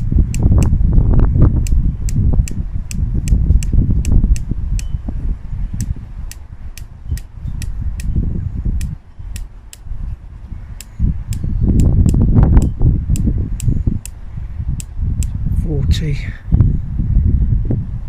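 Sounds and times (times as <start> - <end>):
scope turret clicking: 0.0 - 0.8, 8.8 - 9.9.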